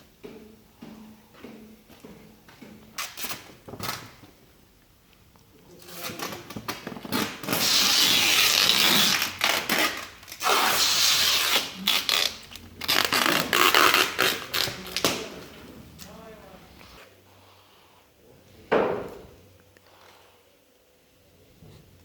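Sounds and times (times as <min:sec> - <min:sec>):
rough rubbing and scraping: 0:07.0 - 0:15.0.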